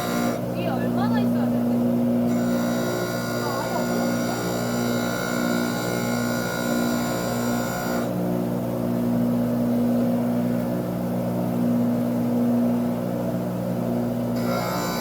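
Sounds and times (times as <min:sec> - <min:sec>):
machine motor humming: 0:00.0 - 0:08.2, 0:14.3 - 0:15.0.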